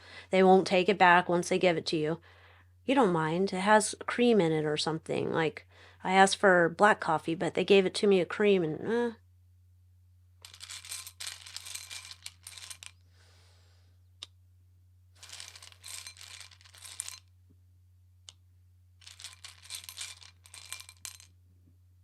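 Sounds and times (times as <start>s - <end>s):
cards being shuffled: 10.4s - 13.0s, 15.2s - 17.2s, 19.0s - 21.3s.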